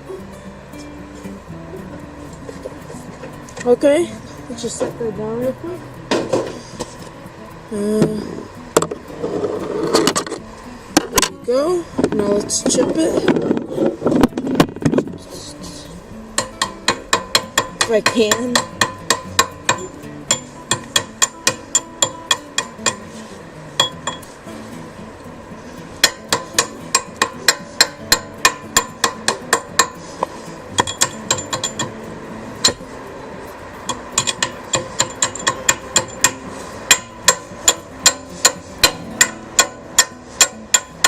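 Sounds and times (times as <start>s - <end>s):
hammer striking metal: 16.4s - 23.2s, 23.8s - 24.3s, 26.0s - 30.0s, 30.8s - 32.0s, 33.9s - 41.0s.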